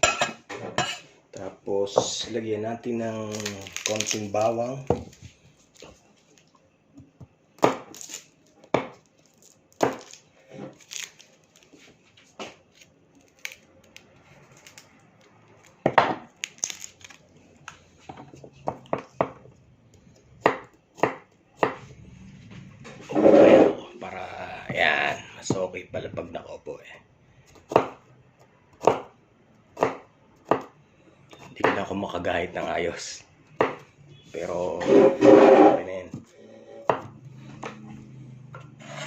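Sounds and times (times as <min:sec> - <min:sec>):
knife chopping on cutting board: 0:20.4 - 0:21.8, 0:27.5 - 0:28.0, 0:28.8 - 0:29.1, 0:29.8 - 0:30.7, 0:33.6 - 0:33.8.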